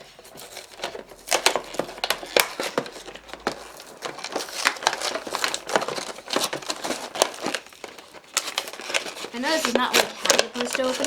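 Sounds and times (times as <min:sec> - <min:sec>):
toy packaging crinkling and tearing: 0:00.0 - 0:11.0.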